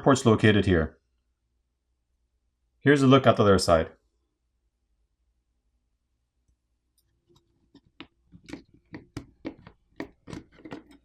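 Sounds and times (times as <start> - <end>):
plastic parts clicking and tapping: 7.0 - 11.0.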